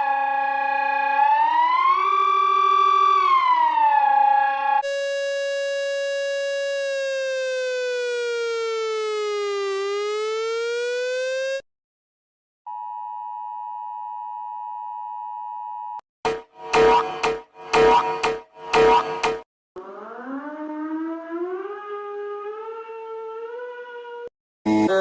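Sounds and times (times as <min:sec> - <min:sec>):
buzzy electronic siren tone: 0:01.2 - 0:11.6, 0:16.3 - 0:23.2
high electronic alert tone: 0:16.3 - 0:19.4.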